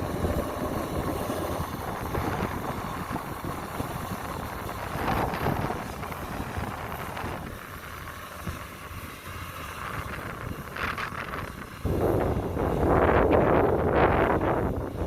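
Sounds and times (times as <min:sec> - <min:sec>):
distant harvester engine rumble: 0:00.0 - 0:15.0
wind on microphone: 0:00.0 - 0:15.0.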